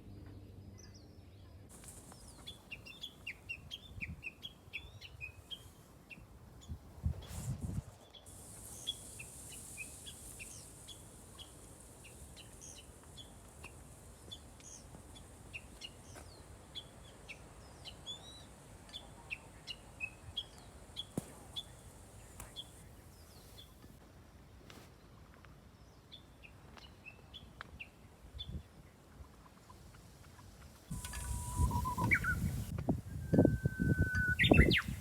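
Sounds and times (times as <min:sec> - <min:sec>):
songbirds chirping: 0:00.0 - 0:06.8, 0:08.0 - 0:35.0
faint steady hiss: 0:00.0 - 0:35.0.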